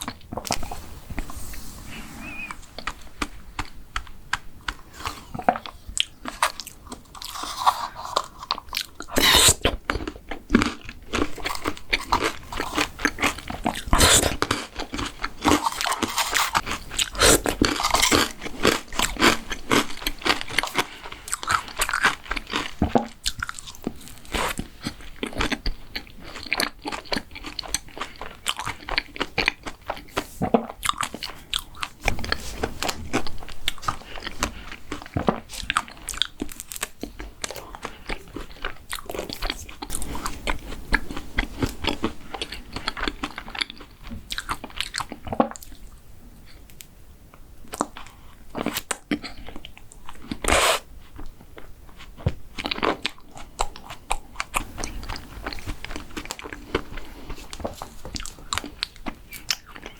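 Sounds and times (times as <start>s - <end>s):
chewing and crunching: 2.7s - 46.9s, 47.6s - 59.9s.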